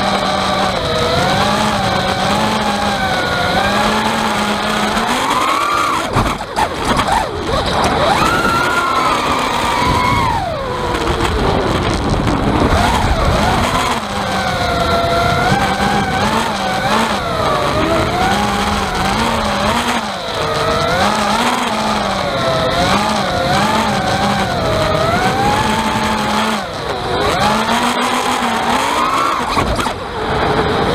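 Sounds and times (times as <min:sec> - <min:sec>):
rattle: 0:00.0 - 0:30.0
drone motors whining: 0:00.0 - 0:30.9.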